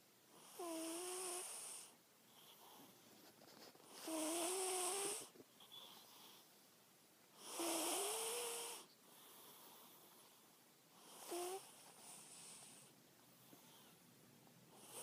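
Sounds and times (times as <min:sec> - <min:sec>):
cat snoring with whistling tone: 0:00.4 - 0:02.6, 0:04.0 - 0:06.4, 0:07.4 - 0:09.8, 0:11.0 - 0:12.9.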